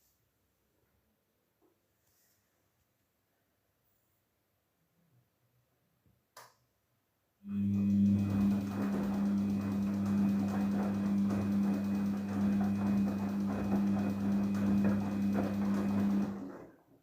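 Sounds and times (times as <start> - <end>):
washing machine motor hum: 7.5 - 17.0.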